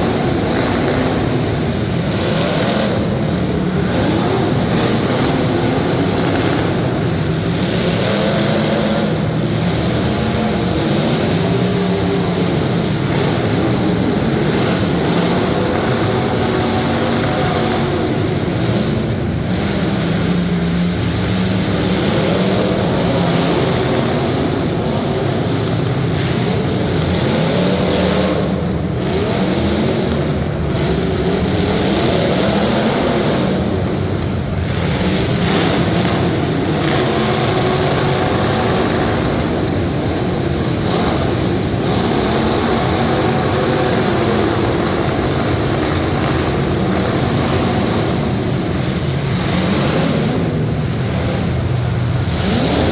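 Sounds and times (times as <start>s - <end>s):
car engines revving: 0.0s - 52.9s.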